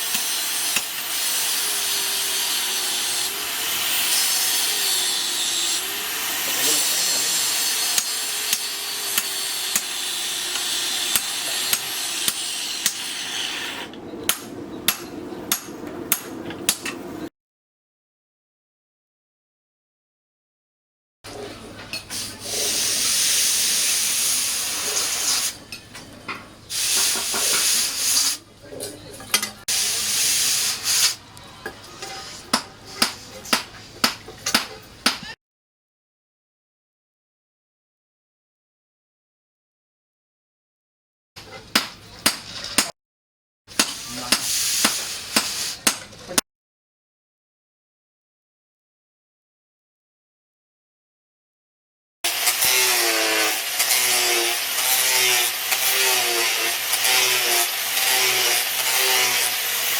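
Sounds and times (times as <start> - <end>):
loud hiss: 22.1 - 25.6, 26.7 - 28.4, 29.7 - 31.2, 43.9 - 45.8.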